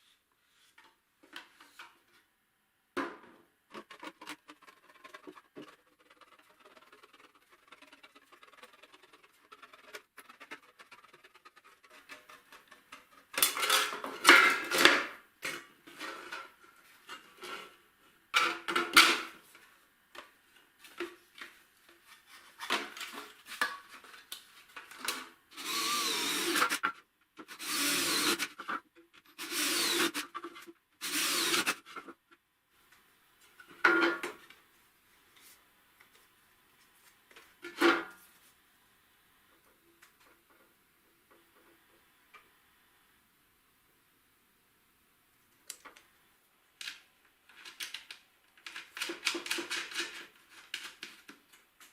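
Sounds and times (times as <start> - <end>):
scraping and handling noises: 0.0 - 2.4, 3.0 - 25.4, 46.8 - 51.9
power tool running in bursts: 25.6 - 26.8, 27.6 - 28.4, 29.4 - 30.2, 31.0 - 31.7.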